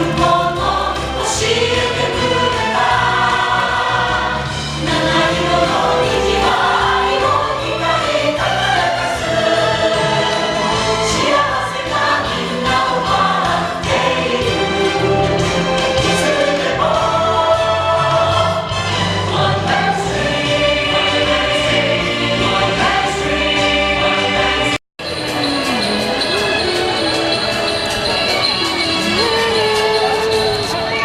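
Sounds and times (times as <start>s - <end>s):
choir singing: 0.0s - 31.0s.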